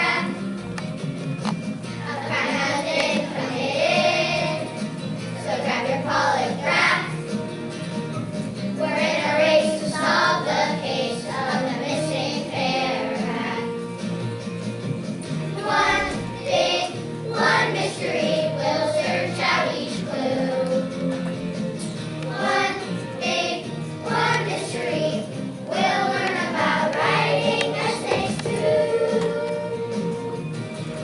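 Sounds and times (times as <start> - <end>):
children's choir singing: 0.0 - 0.4, 2.0 - 7.2, 8.8 - 13.9, 15.6 - 21.2, 22.3 - 30.2
backing music: 0.0 - 31.0.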